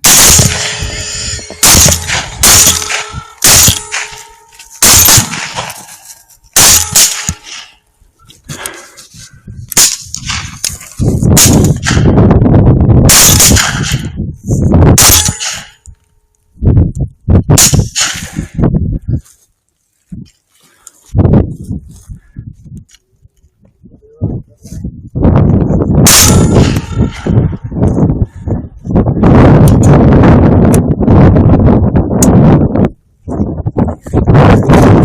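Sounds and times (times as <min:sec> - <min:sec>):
rifle shots: 0:00.0 - 0:05.9, 0:06.6 - 0:07.7, 0:09.8 - 0:10.7, 0:11.4 - 0:12.1, 0:13.1 - 0:14.1, 0:15.0 - 0:15.8, 0:17.6 - 0:18.4, 0:26.1 - 0:27.3.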